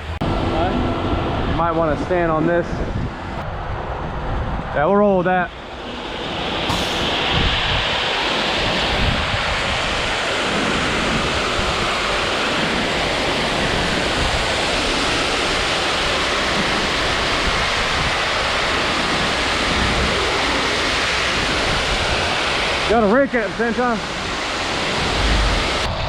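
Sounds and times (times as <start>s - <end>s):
concrete mixer truck running: 0.0s - 4.8s, 5.5s - 26.0s
water rushing into mixer: 5.8s - 25.9s.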